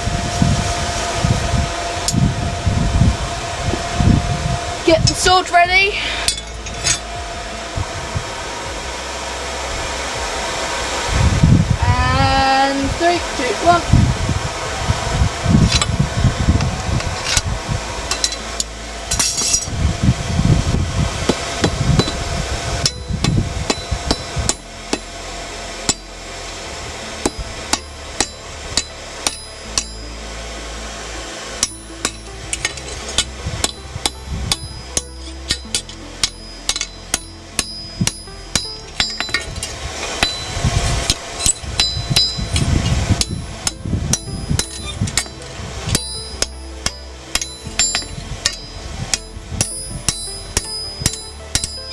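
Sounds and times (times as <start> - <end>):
low rumble: 0.0 - 51.9
hammer blows on steel: 20.7 - 26.3, 31.6 - 51.9.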